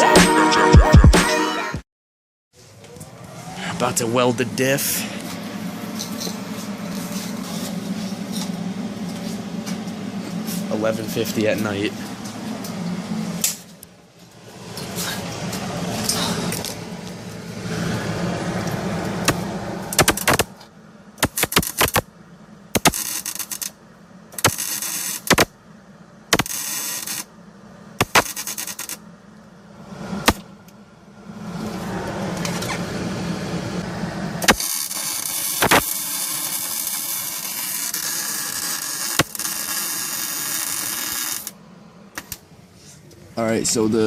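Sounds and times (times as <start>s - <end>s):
welder crackling: 18.6s - 20.6s, 21.2s - 22.0s, 34.4s - 41.6s.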